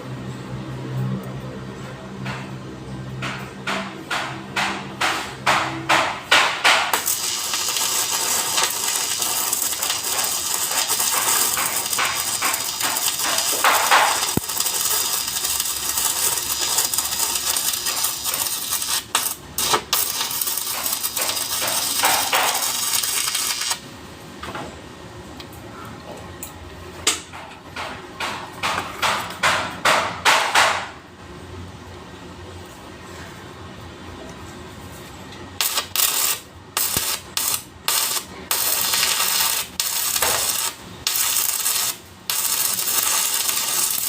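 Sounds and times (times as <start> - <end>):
arc welding crackling sizzle: 6.2 - 23.9, 35.6 - 44.0.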